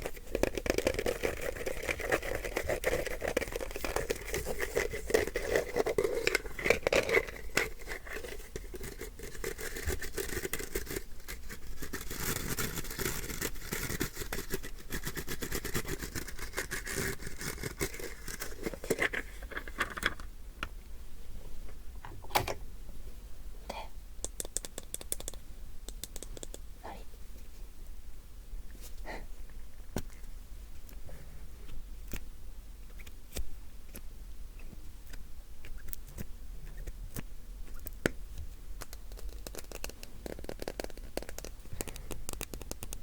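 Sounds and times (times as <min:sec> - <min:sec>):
rapid scratching: 0:00.0 - 0:19.3.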